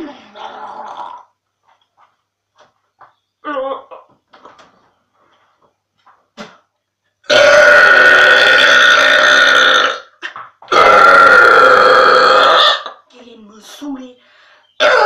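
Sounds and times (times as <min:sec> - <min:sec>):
woman burping: 0:00.0 - 0:01.4, 0:03.4 - 0:04.1, 0:07.3 - 0:13.0, 0:14.8 - 0:15.0.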